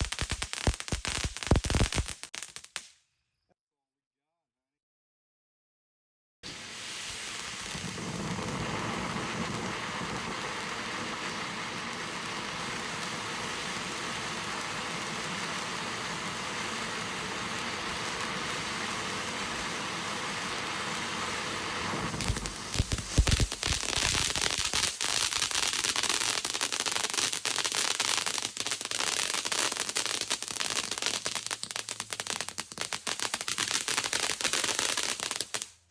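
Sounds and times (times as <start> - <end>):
firework crackles: 0.0 - 3.0, 6.4 - 35.9
steady hiss: 6.5 - 26.1.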